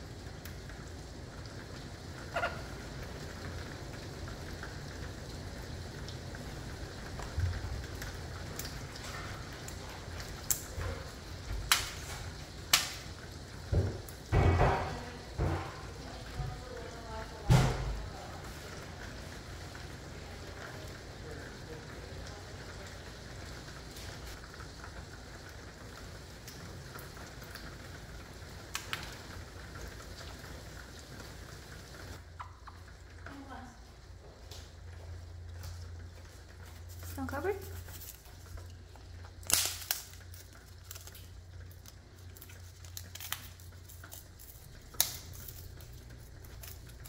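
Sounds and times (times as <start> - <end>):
heavy rain hissing: 0.0 - 32.3.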